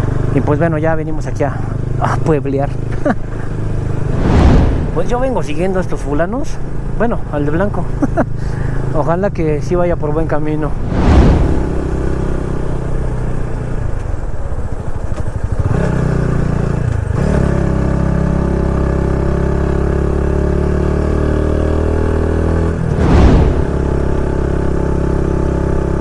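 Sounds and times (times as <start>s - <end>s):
loud whoosh: 4.0s - 6.0s, 10.6s - 13.0s, 22.8s - 24.7s.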